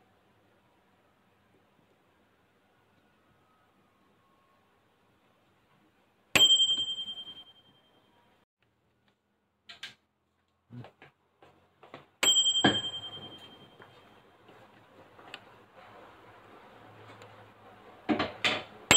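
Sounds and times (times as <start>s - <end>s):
microwave timer bell dinging: 6.4s - 8.1s, 12.2s - 14.1s
small clicks and knocks: 9.0s - 10.0s.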